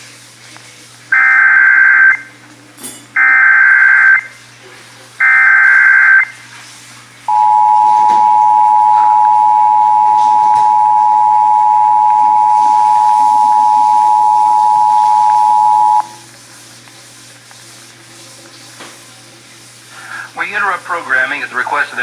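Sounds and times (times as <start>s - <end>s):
data burst tones: 1.2s - 2.3s, 3.2s - 4.3s, 5.2s - 6.3s, 7.3s - 16.2s
two-tone attention signal: 1.2s - 2.3s, 3.2s - 4.3s, 5.2s - 6.3s, 7.3s - 16.2s.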